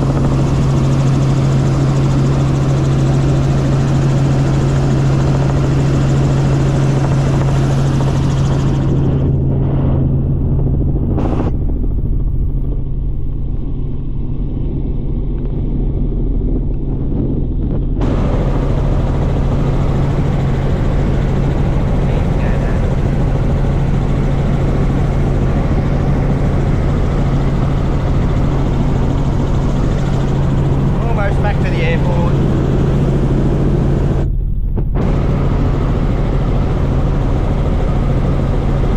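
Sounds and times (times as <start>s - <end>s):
helicopter rotor and engine hum: 0.0s - 38.9s.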